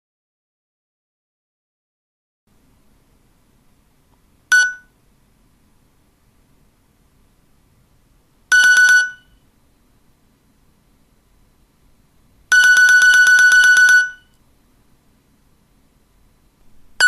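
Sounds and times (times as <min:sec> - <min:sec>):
pulsing electronic ring: 0:12.5 - 0:14.3.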